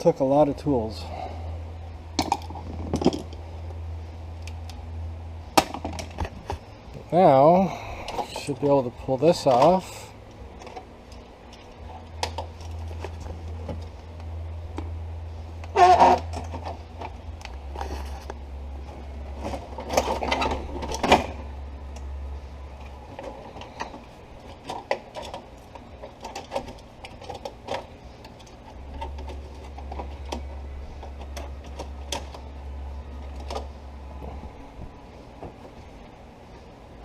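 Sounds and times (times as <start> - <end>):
low steady hum: 0.0 - 37.0.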